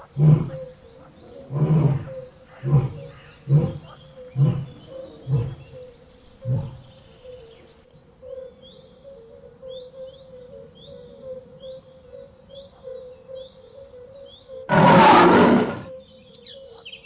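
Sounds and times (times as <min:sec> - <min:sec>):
birds chirping: 0:00.0 - 0:05.8, 0:06.5 - 0:07.0, 0:14.7 - 0:15.9
lion roaring and grunting: 0:00.1 - 0:00.6, 0:01.5 - 0:05.7, 0:06.5 - 0:06.9, 0:14.7 - 0:15.9.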